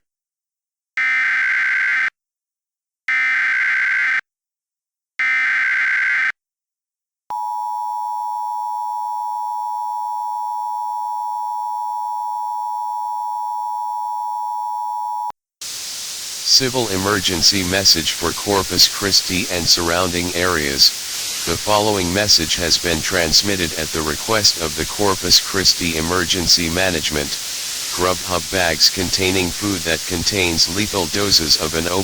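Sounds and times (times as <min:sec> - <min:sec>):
two-tone attention signal: 0:07.3 - 0:15.3
digital data bursts: 0:16.0 - 0:32.0.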